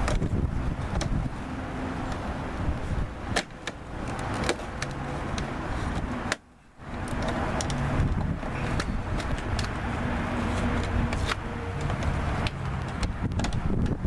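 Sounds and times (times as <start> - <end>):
wind rumbling on microphone: 0.0 - 14.0
clicks and taps of car door parts: 3.3 - 5.5, 10.8 - 14.0.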